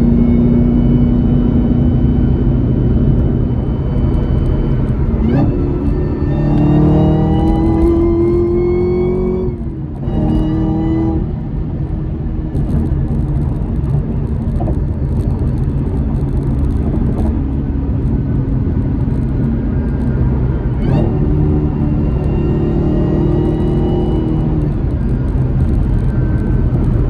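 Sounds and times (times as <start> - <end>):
held pitched tone: 0.0 - 11.2
car engine and road rumble: 0.0 - 27.0.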